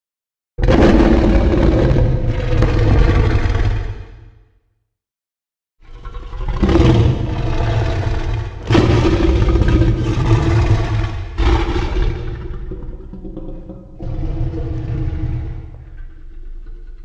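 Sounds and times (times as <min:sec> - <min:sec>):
monster growling roar: 0:00.6 - 0:04.3, 0:06.0 - 0:13.3, 0:14.0 - 0:16.1.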